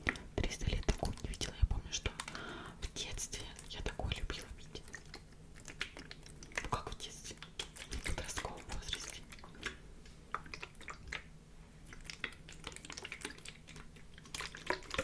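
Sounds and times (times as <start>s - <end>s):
wet lip smacks: 4.8s - 15.0s.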